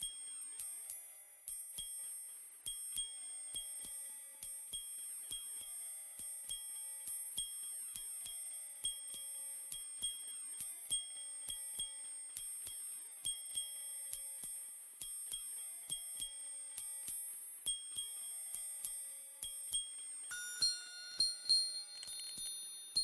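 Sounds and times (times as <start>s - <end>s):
high-pitched tone: 19.7s - 23.0s.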